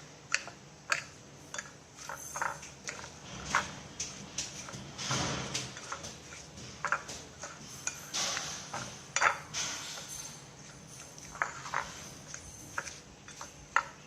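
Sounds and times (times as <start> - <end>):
utensils clinking on cookware: 0.3 - 14.0.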